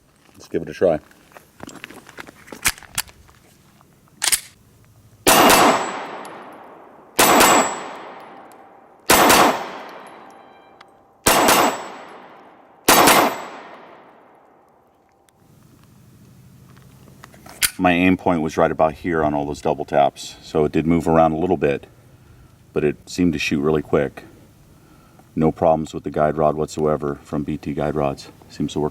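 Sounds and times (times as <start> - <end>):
pistol shots with echo: 5.2 - 10.5, 11.2 - 14.6.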